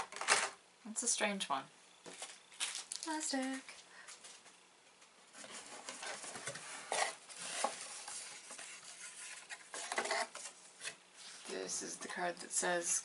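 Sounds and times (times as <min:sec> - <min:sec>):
small plastic items clicking and rustling: 0:02.6 - 0:03.7.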